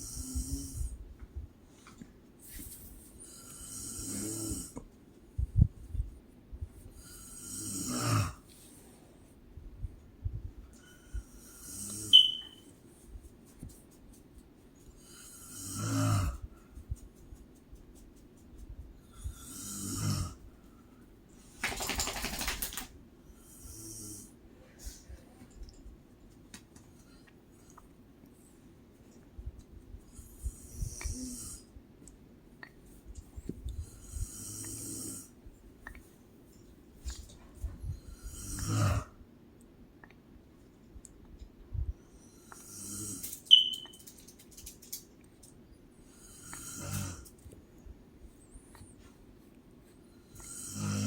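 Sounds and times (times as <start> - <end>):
woman snoring: 7.2 - 8.4, 15.4 - 16.4, 19.3 - 20.4, 38.2 - 39.1, 46.2 - 47.2, 50.4 - 51.0.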